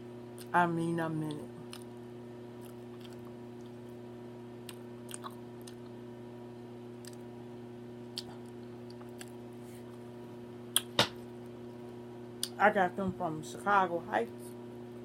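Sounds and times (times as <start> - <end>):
chewing food: 2.6 - 3.9, 4.7 - 6.0, 7.0 - 7.2, 8.1 - 9.4
wet mouth clicks: 4.7 - 5.9, 10.8 - 11.0.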